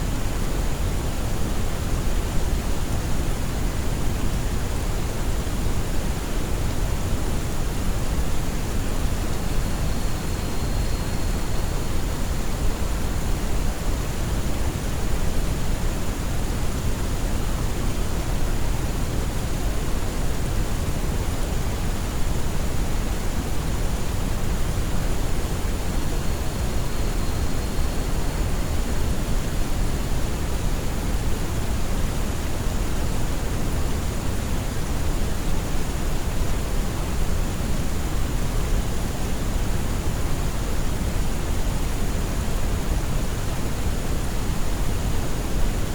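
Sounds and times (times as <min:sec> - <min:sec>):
steady pink noise hiss: 0:00.0 - 0:45.9.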